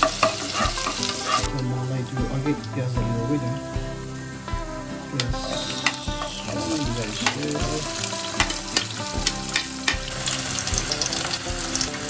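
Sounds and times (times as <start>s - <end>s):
onions sizzling in hot oil: 0.0s - 1.6s, 5.3s - 12.0s
spatula scraping a pan: 0.0s - 1.6s, 5.2s - 11.8s.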